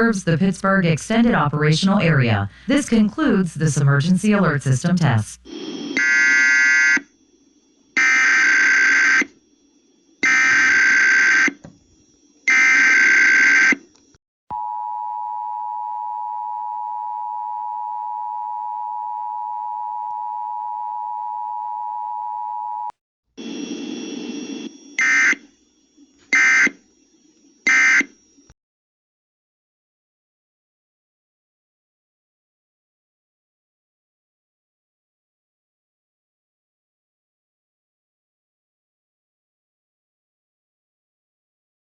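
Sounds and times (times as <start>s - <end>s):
noise: 0.0s - 14.2s, 23.4s - 28.6s.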